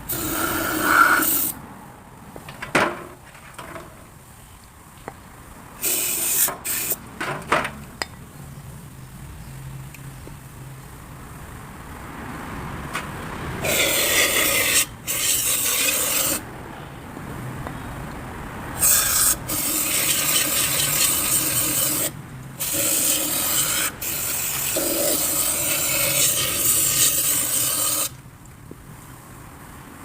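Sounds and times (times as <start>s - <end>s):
harsh rasping noise: 13.6s - 16.4s, 18.8s - 28.2s.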